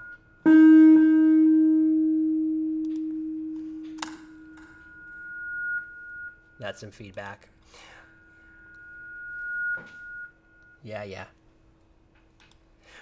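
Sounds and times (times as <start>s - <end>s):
echo feedback tone: 0.0s - 6.6s, 8.1s - 10.8s
high ringing tone: 0.0s - 6.7s, 8.0s - 10.9s
click: 2.8s - 3.1s, 12.4s - 12.6s.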